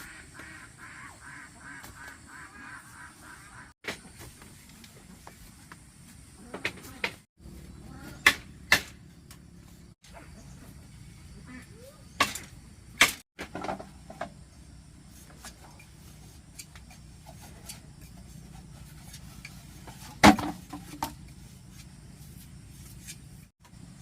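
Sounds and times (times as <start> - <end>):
objects knocking and clattering: 13.4 - 14.4, 19.4 - 21.3.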